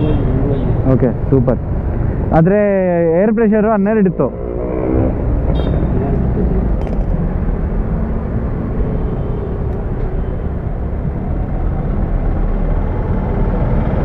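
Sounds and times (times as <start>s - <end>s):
road traffic rumble: 0.0s - 14.0s
faint engine hum: 5.1s - 14.0s.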